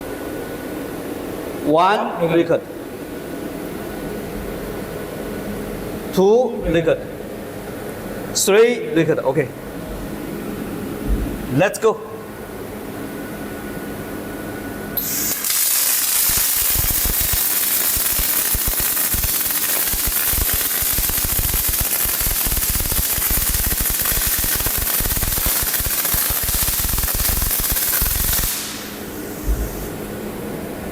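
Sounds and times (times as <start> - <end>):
arc welding crackle: 15.0 - 29.3.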